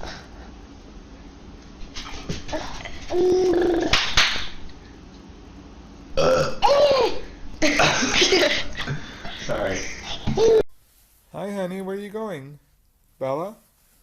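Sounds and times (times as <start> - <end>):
person belching: 6.2 - 6.9.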